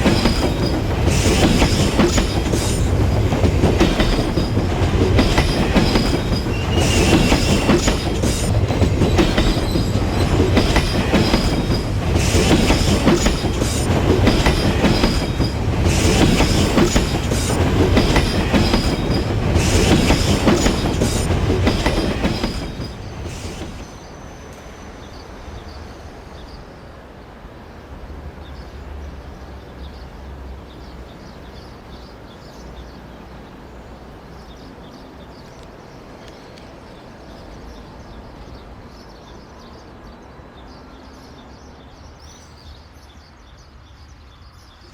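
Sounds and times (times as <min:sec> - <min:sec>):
train wheels clattering over rail joints: 0:00.0 - 0:24.0
high squeal of wheels on rails: 0:00.0 - 0:26.7.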